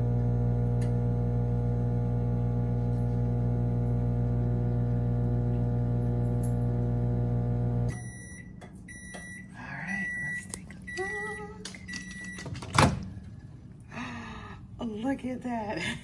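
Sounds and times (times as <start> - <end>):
microwave oven humming: 0.0 - 9.4.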